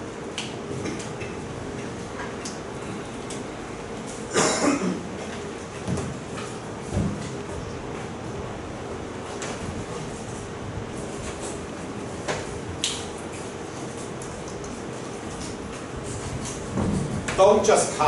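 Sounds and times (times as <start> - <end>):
room hum: 0.0 - 18.0
objects clattering and knocking: 16.2 - 17.4.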